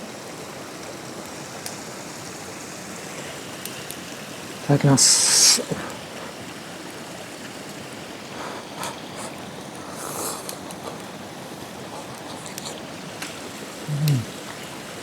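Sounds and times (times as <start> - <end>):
soft eating hiss: 4.7 - 7.0, 8.1 - 15.0.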